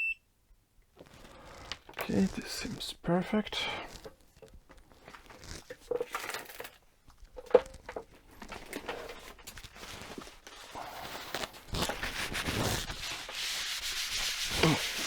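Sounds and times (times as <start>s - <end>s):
scratchy rubbing: 1.0s - 3.0s, 3.6s - 6.2s, 9.7s - 15.0s
tools clicking and rustling: 3.9s - 9.8s.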